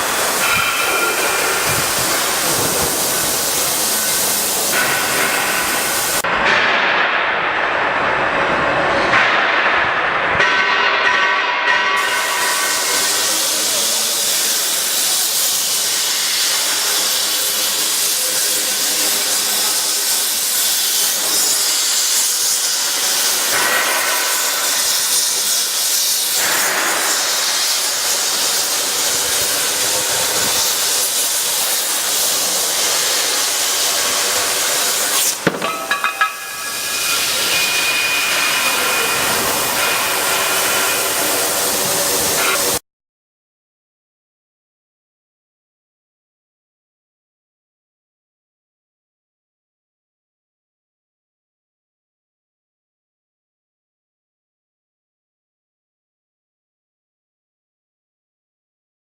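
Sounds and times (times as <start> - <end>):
plasma torch cutting metal: 0.0 - 6.2, 12.0 - 42.8.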